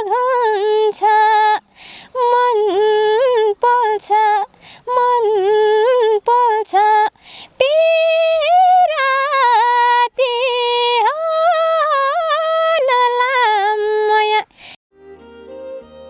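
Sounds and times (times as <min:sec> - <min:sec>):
singer breathing: 0:01.7 - 0:02.2, 0:04.5 - 0:04.9, 0:07.1 - 0:07.6, 0:14.5 - 0:14.8.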